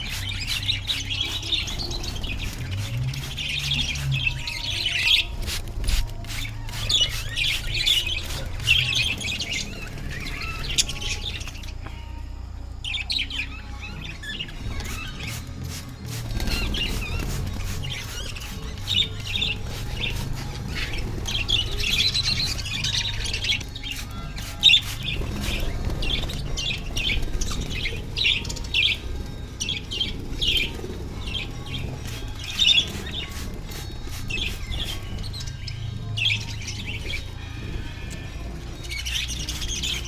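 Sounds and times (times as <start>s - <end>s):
budgerigars chirping: 0.0s - 5.6s, 16.2s - 40.0s.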